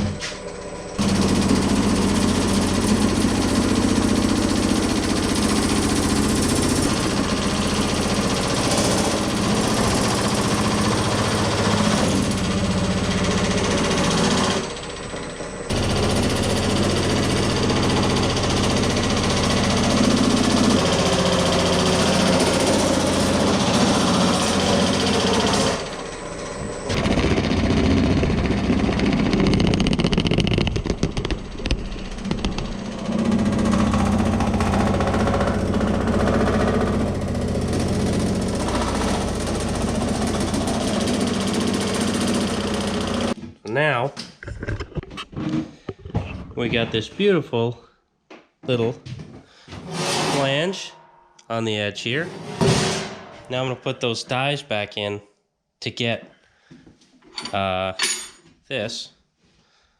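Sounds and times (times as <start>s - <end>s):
machine hammering sheet metal: 1.0s - 14.8s, 15.7s - 26.0s, 26.9s - 43.4s, 49.8s - 51.3s, 52.1s - 53.7s.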